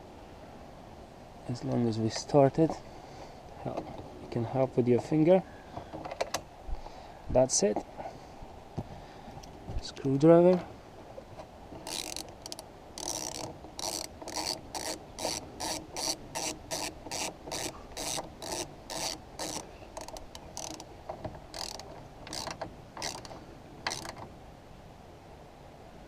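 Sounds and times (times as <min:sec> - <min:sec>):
ratcheting screwdriver clicking: 0:11.8 - 0:20.9, 0:21.5 - 0:23.3, 0:23.9 - 0:24.2.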